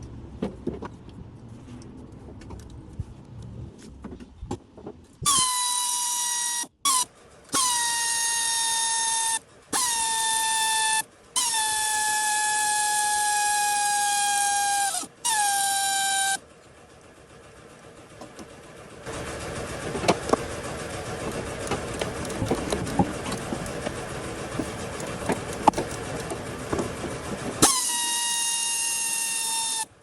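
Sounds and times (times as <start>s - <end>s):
high-pitched horn blasts: 27.6s - 29.9s.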